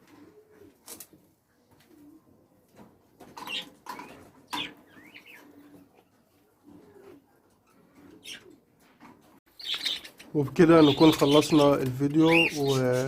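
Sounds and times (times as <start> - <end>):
birds chirping: 3.4 - 6.2, 7.0 - 8.6, 9.5 - 13.0
birds drawn-out calls: 7.0 - 8.6, 9.5 - 13.0.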